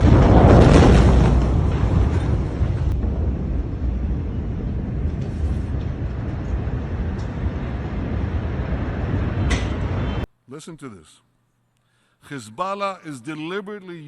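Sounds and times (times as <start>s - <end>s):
low rumbling noise: 0.0s - 10.3s.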